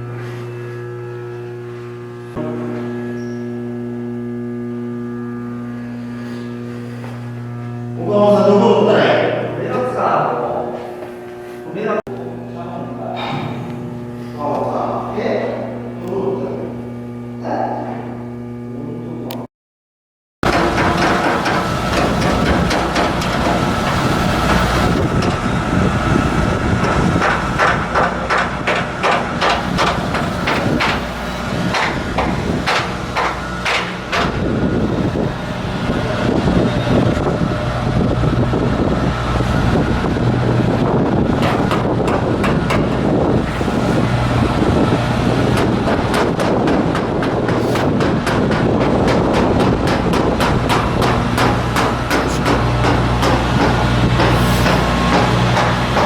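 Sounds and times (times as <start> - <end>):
machinery humming: 0.0 - 19.5, 20.4 - 56.0
hammering on metal: 20.4 - 24.6, 26.8 - 31.1, 31.7 - 34.5, 41.3 - 43.6, 45.5 - 56.0.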